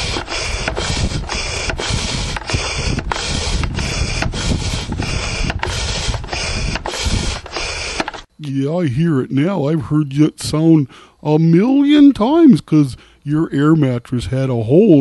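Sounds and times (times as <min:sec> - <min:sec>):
air pump pumping: 0:00.0 - 0:08.3.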